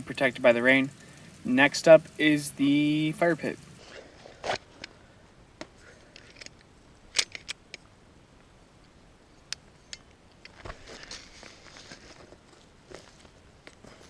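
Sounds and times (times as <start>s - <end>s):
rustling: 9.7s - 14.0s.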